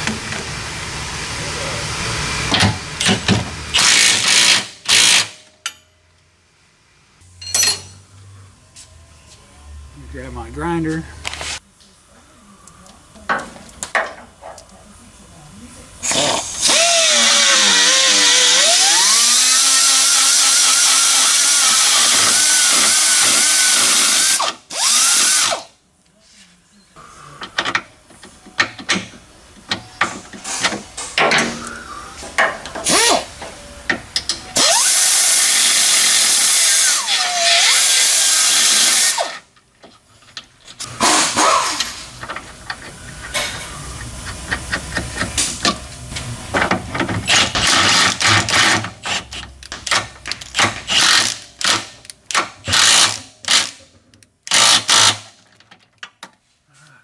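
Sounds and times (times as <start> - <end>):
power grinder grinding metal: 16.0 - 25.6.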